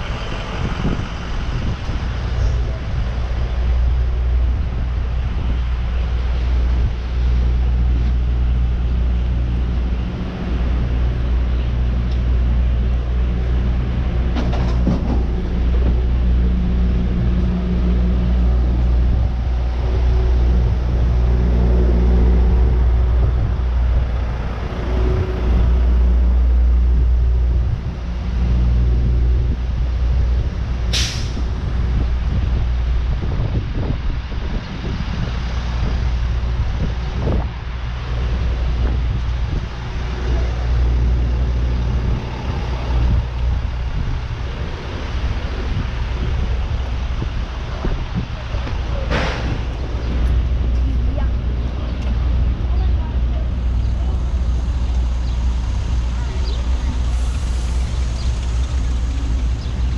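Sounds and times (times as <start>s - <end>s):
deep steady rumble: 0.0s - 59.9s
street traffic: 0.0s - 59.9s
vehicle engine running: 0.0s - 59.9s
sharp hiss: 30.9s - 31.5s.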